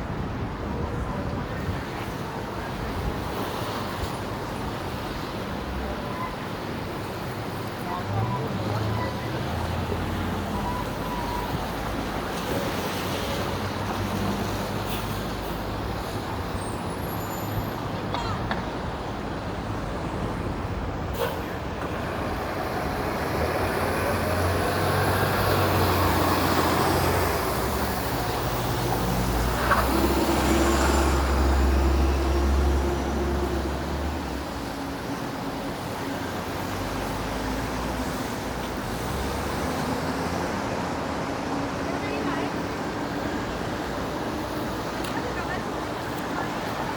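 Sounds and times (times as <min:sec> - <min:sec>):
city street traffic passing: 0:00.0 - 0:46.9
heavy vehicle rumbling: 0:00.0 - 0:46.9.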